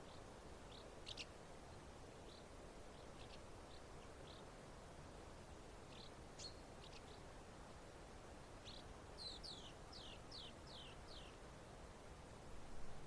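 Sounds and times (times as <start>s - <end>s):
songbird calling: 0.0s - 4.6s, 5.8s - 7.6s, 8.5s - 11.4s
faint background wash: 0.0s - 13.0s.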